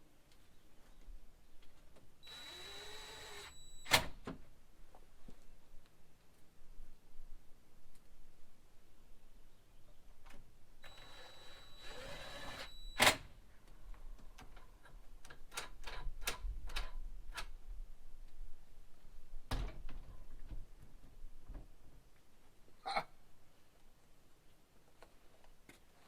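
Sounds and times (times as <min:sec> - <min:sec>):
faint steady high tone: 0:02.2 - 0:03.9, 0:10.8 - 0:13.0.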